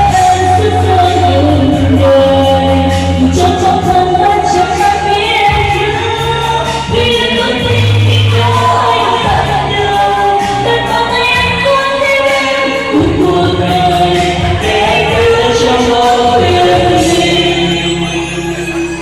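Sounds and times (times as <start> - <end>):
song with singing voices: 0.0 - 19.0.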